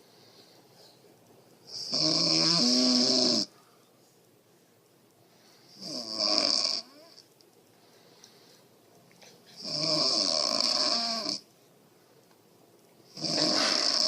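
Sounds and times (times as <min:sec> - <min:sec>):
woman snoring loudly: 0:01.8 - 0:03.5, 0:05.8 - 0:07.1, 0:09.6 - 0:11.4, 0:13.1 - 0:14.0.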